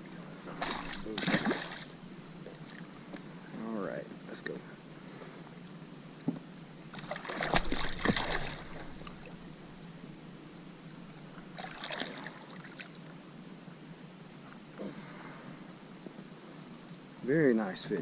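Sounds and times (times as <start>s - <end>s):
water splashing and dripping: 0.5s - 1.8s, 7.0s - 9.4s.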